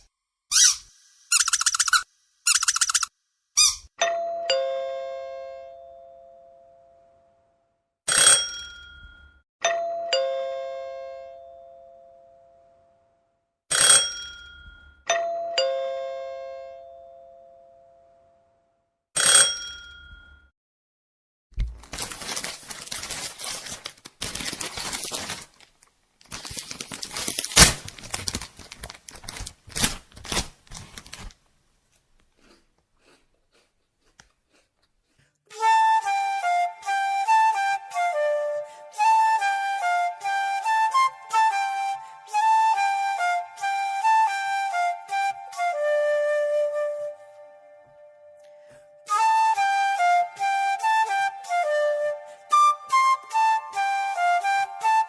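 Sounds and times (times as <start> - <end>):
two-note doorbell chime: 4.0 - 7.0, 8.5 - 12.5, 14.2 - 18.1
rustling and crackling: 21.7 - 32.1.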